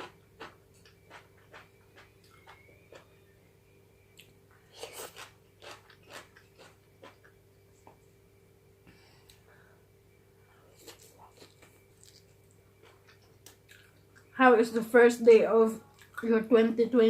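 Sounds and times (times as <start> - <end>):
faint steady hum: 0.0 - 17.0
crunching chicken bones: 4.8 - 7.3.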